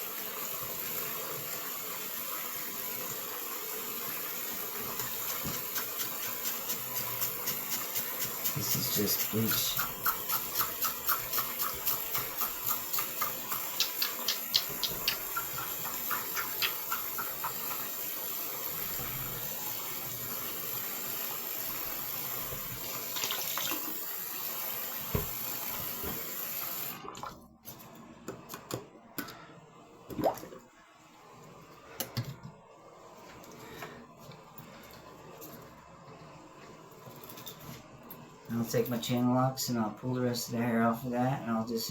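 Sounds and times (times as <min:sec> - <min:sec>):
faucet water running into sink: 0:00.0 - 0:27.4.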